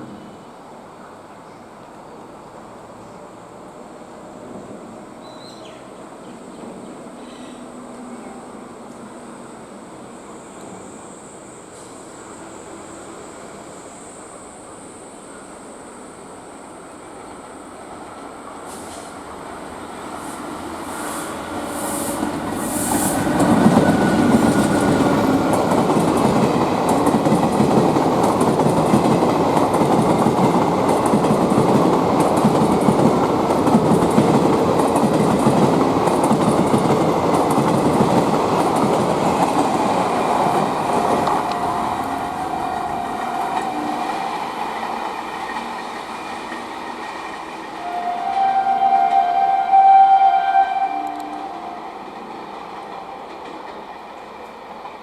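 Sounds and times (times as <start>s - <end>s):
passenger train passing: 0.0s - 55.0s
wheels rattling over rails: 22.3s - 47.8s.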